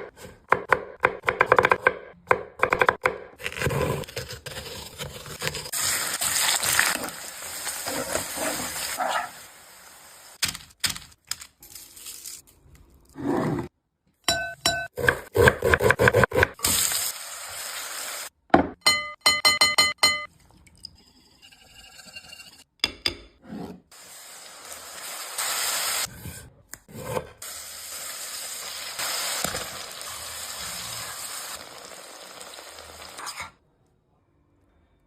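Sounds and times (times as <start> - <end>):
okra sizzling in a pan: 5.7 - 10.4, 16.6 - 18.3, 24.0 - 26.1, 27.4 - 33.5.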